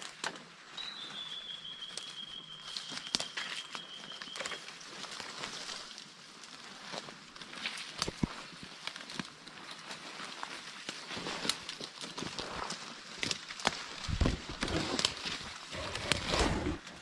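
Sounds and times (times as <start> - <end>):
footsteps through dry brush: 0.0 - 17.0
high whistle: 0.8 - 4.6
twigs snapping: 2.0 - 17.0.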